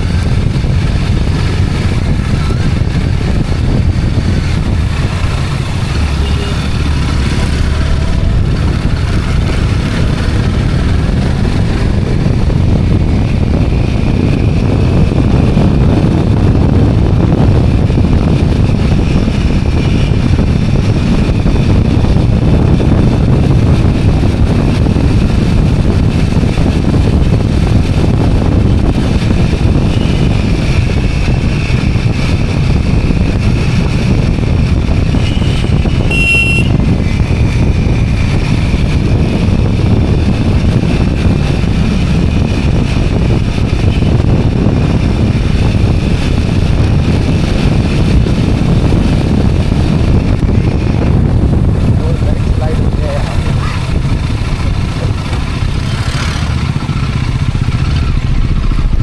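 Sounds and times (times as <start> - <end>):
motorcycle engine: 0.0 - 59.0
road and wind noise: 0.0 - 59.0.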